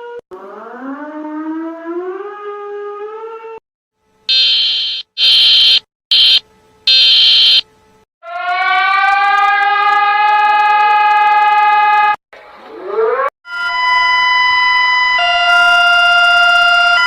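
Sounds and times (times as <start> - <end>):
harsh alarm buzzing blasts: 4.3 - 7.6
rising siren tone: 8.2 - 12.2.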